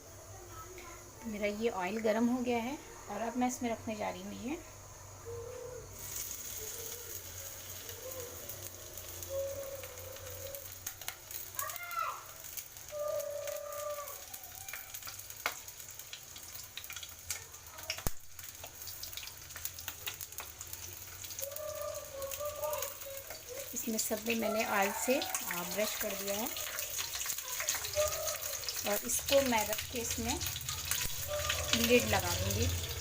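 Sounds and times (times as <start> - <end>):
oil sizzling in a pan: 0.0 - 4.8, 6.0 - 33.0
oil crackling and spitting: 6.0 - 24.3, 25.3 - 33.0.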